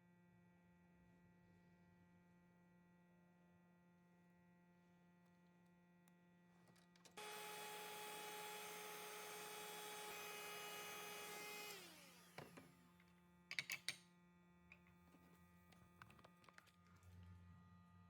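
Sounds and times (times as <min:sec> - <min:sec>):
power tool whining: 0:07.2 - 0:12.8.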